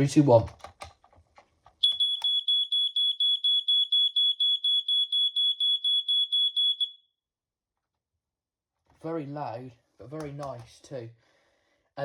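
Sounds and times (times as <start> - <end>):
smoke detector beeping: 1.8 - 7.0.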